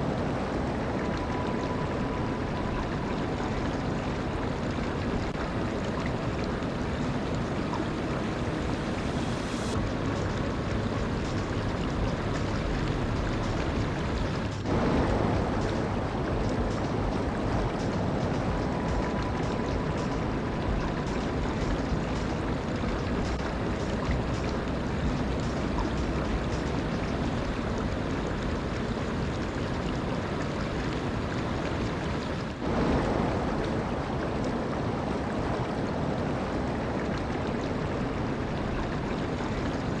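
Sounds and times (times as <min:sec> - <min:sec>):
waterfall rushing: 0:00.0 - 0:09.9.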